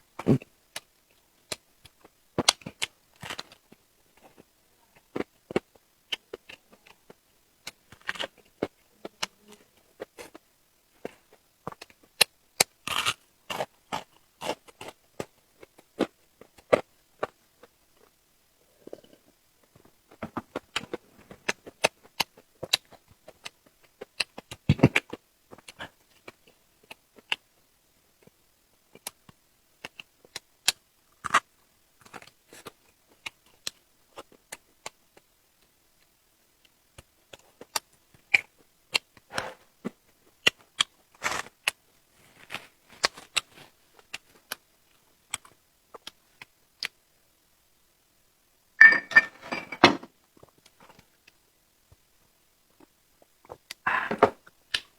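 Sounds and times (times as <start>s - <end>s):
chewing and crunching: 12.8s - 18.1s.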